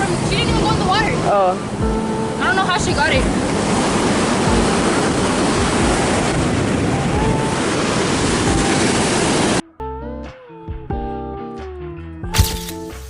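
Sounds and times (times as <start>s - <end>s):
music with plucked notes: 0.0s - 3.6s, 4.3s - 7.7s, 8.4s - 13.0s
ocean surf: 0.0s - 9.6s
wind buffeting microphone: 0.0s - 9.6s.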